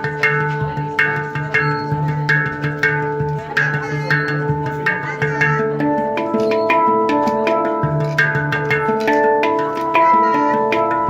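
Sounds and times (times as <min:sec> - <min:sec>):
plucked note music with beat: 0:00.0 - 0:11.0.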